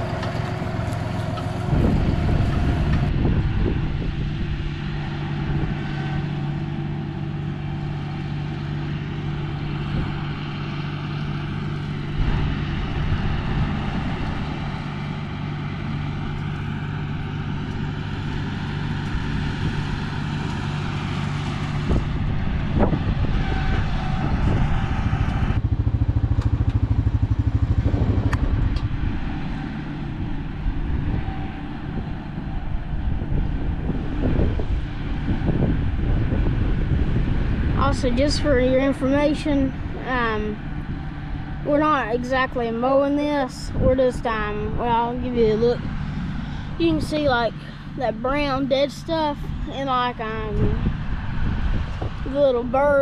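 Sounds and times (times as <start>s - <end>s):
rotary cutter cutting dry weeds: 0.0s - 3.1s, 4.8s - 24.6s
tractor diesel engine running: 0.0s - 53.0s.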